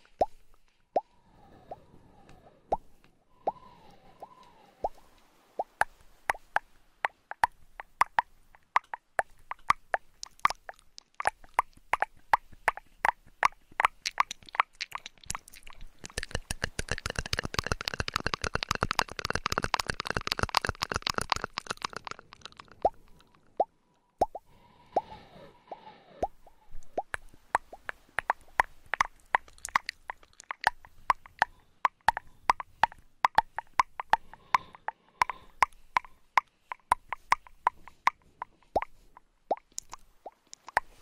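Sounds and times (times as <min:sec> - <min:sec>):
sharp plops: 0:05.6 - 0:25.1, 0:26.2 - 0:41.0
fast dense crackle: 0:14.1 - 0:23.4.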